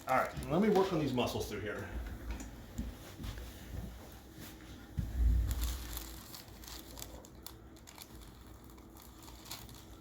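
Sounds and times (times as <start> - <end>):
hands rustling and crinkling: 2.7 - 10.0.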